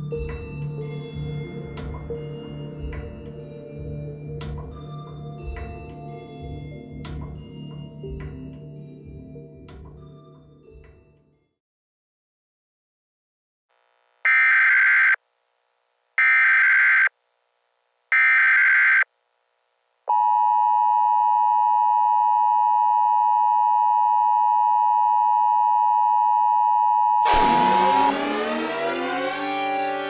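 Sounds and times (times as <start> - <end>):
harsh data tone bursts: 14.3 - 15.2, 16.2 - 17.1, 18.1 - 19.1.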